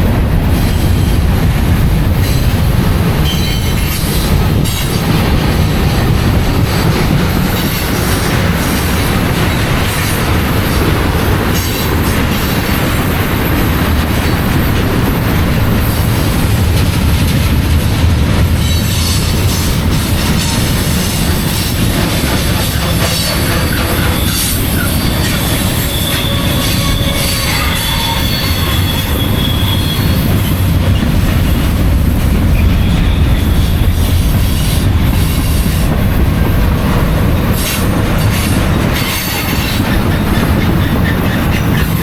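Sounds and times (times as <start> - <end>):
freight train rumbling past: 0.0 - 42.0
train wheel clatter: 0.0 - 42.0
high wheel squeal: 22.6 - 30.6.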